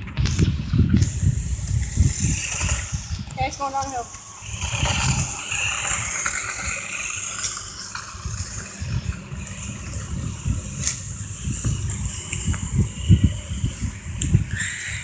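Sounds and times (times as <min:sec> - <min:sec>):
low rumbling on microphone: 0:00.0 - 0:15.0
toy car motor whirring: 0:00.3 - 0:15.0.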